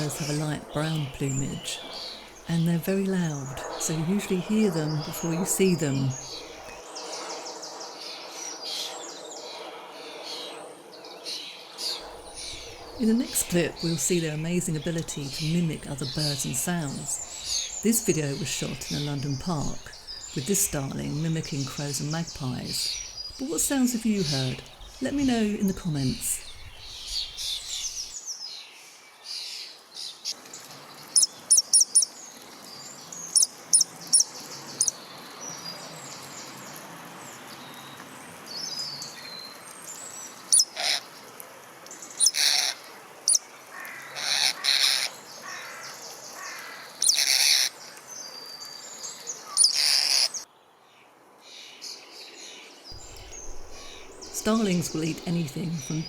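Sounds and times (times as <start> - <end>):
harsh rasping bird calls: 12.0 - 28.2, 42.2 - 47.8, 53.0 - 56.0.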